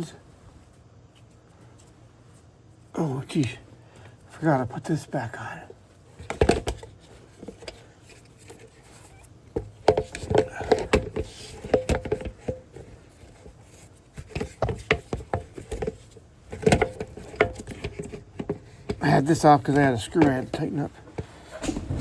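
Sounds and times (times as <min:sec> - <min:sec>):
part clicking and knocking: 0:21.2 - 0:22.0.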